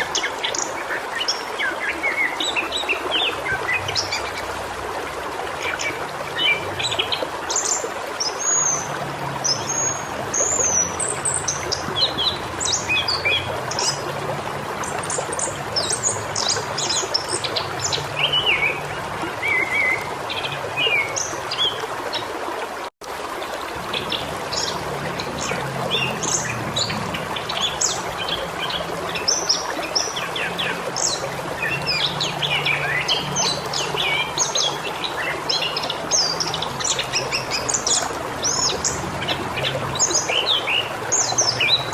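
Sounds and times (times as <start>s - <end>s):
flowing water rushing: 0.0s - 41.9s.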